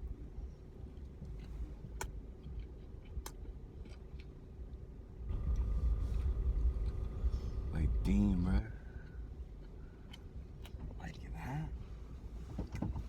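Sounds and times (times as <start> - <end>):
car cabin rumble: 10.7 - 13.0.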